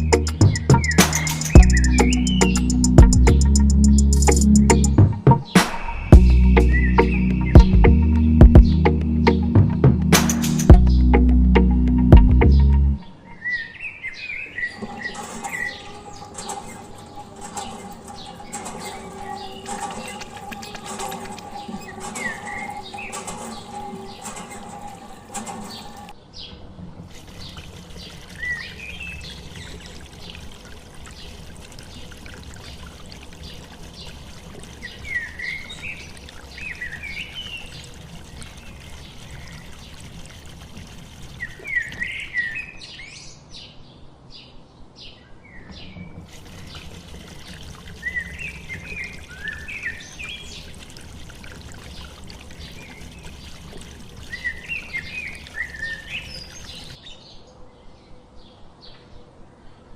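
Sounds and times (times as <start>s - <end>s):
multi-tone hum: 14.6s - 26.1s
small birds chirping: 45.0s - 57.4s.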